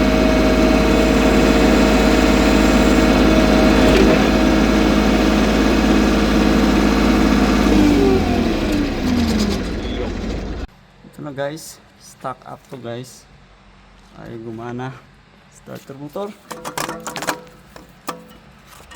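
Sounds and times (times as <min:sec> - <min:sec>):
starter motor whining: 0:00.0 - 0:10.7.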